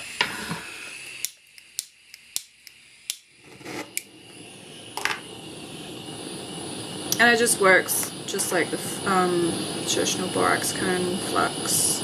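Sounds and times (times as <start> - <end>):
torch flame hissing: 0.0 - 12.0
torch igniter clicks: 1.0 - 5.3, 6.1 - 8.2.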